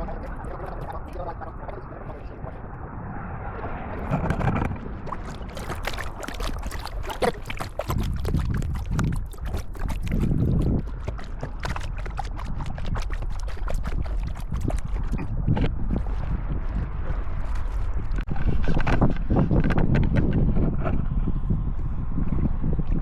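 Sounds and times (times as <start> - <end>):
low uneven rumble: 0.0 - 22.8
paddle splashing in water: 3.5 - 18.3.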